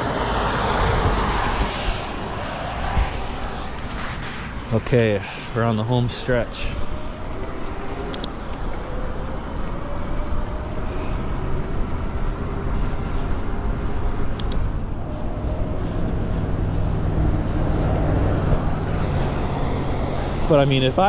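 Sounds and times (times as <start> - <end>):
wind noise on microphone: 0.0 - 5.6, 6.5 - 20.4
brief clicks: 14.3 - 14.7.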